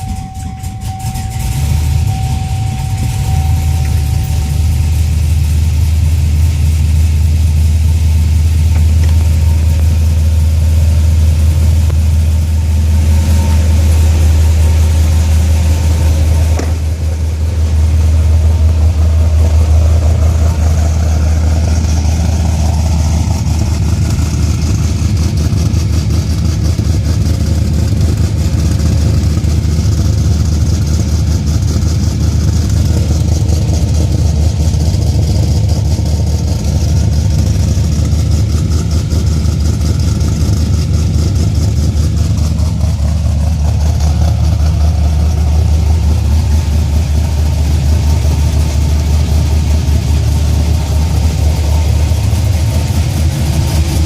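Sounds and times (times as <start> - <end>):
car engine idling: 0.0 - 54.0.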